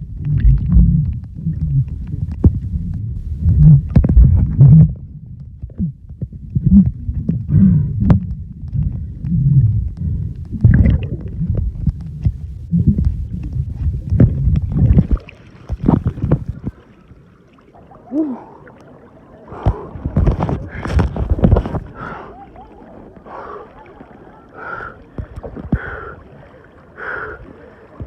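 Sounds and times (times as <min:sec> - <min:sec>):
muffled underwater rumbles: 0:00.0 - 0:28.0.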